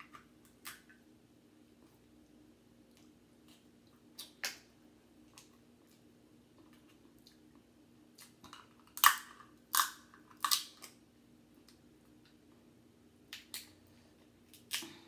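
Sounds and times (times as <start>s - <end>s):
crab shell cracking: 8.5s - 11.0s.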